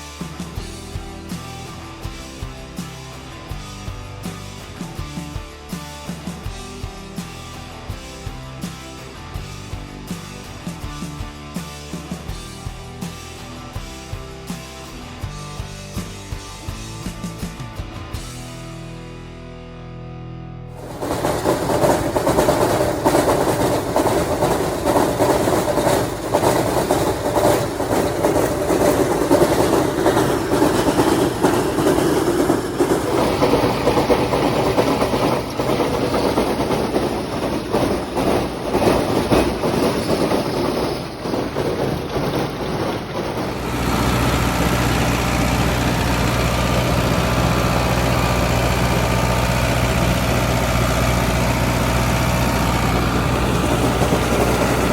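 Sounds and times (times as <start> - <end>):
machinery clattering: 20.8 - 54.9
tractor engine running: 20.8 - 54.9
engine idling with low hum: 41.8 - 54.9.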